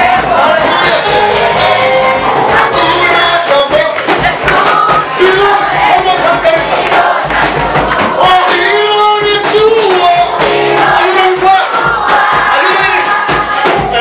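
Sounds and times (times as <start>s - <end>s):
instruments with low beat: 0.0s - 14.0s
voices singing together: 0.0s - 14.0s.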